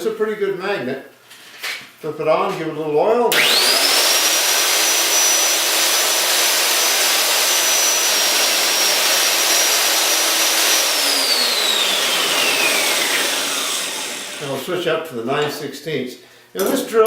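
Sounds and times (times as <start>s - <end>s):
drill motor high whine: 3.3s - 14.6s.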